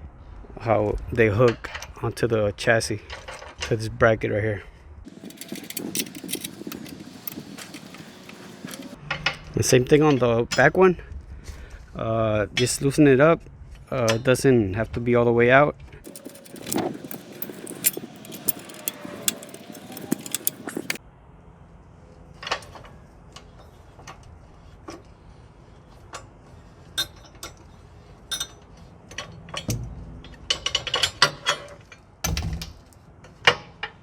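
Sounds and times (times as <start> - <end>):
metal clicks and clinks: 5.1 - 9.0, 16.1 - 21.0
socket ratchet clicking: 5.1 - 9.0, 16.1 - 21.0.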